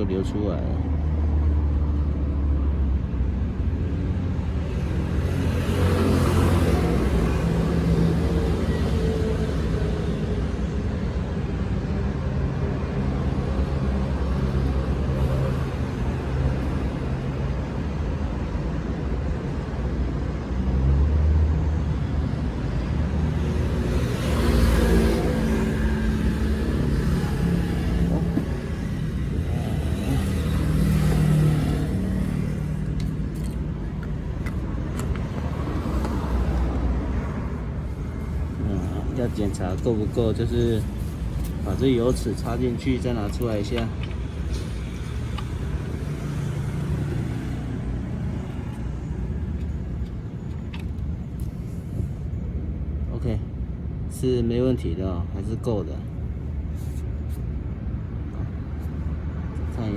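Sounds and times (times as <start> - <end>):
road traffic rumble: 0.0 - 59.9.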